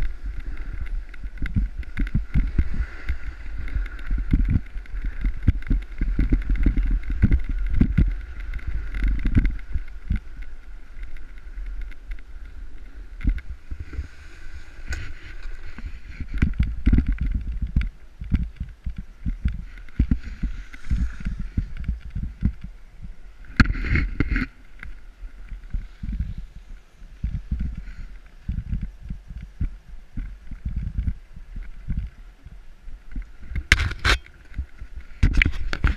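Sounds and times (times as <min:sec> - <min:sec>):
snowboard scraping over snow: 0:00.0 - 0:32.3
faint steady hum: 0:00.0 - 0:35.9
wind buffeting microphone: 0:00.0 - 0:35.9.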